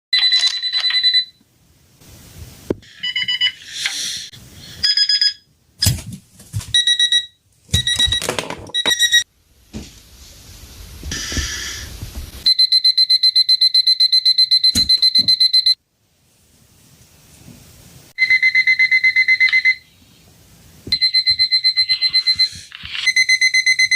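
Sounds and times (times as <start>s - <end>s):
alarm clock buzzers beeping: 2.9s - 3.6s, 6.8s - 9.2s, 12.5s - 15.8s, 21.0s - 23.9s
hissy noise: 9.8s - 12.4s.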